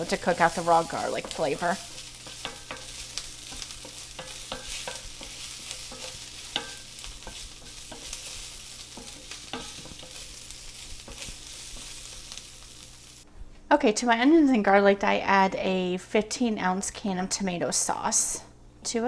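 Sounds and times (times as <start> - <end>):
onion and garlic sizzling in skillet: 0.0 - 13.3
utensil tapping against pan: 1.2 - 12.0.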